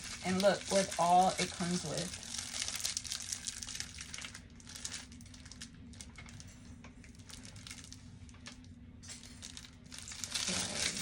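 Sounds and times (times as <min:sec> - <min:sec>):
makeup brushes and packaging rustling: 0:00.0 - 0:11.0.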